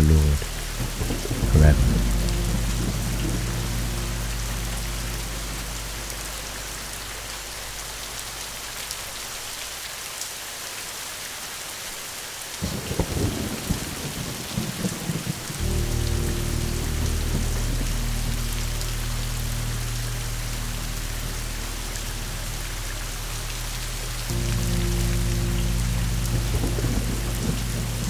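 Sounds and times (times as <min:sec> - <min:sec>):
thunder rumbling: 0:00.0 - 0:09.2, 0:12.6 - 0:28.0
low music drone: 0:00.0 - 0:09.6, 0:15.6 - 0:28.0
steady rain: 0:00.0 - 0:28.0.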